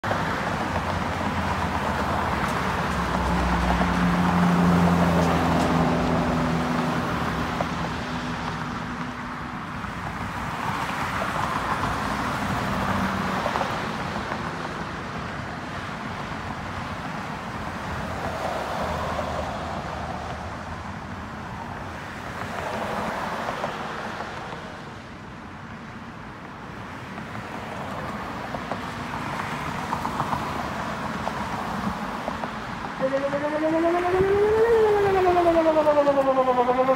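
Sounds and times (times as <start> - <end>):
distant warning siren: 33.0 - 36.9.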